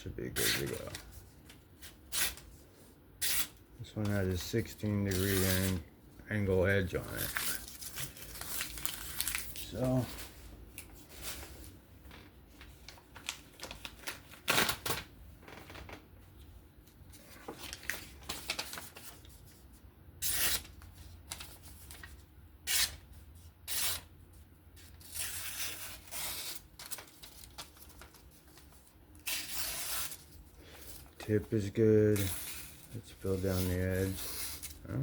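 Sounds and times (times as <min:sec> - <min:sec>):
knife blade slicing paper: 0:20.2 - 0:20.7, 0:22.7 - 0:23.0, 0:23.7 - 0:24.1, 0:29.2 - 0:30.3.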